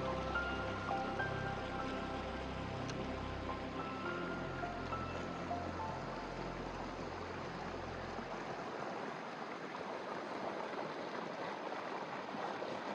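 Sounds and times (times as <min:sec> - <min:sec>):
background music: 0:00.0 - 0:08.3
stream water rushing: 0:00.0 - 0:12.9.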